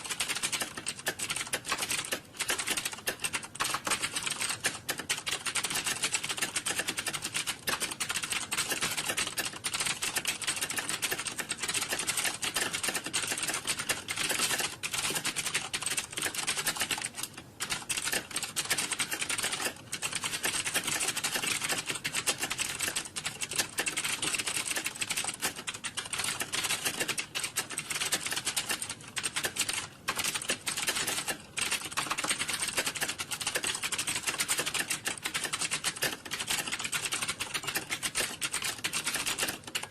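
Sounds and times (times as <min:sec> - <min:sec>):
keyboard typing clatter: 0:00.0 - 0:39.9.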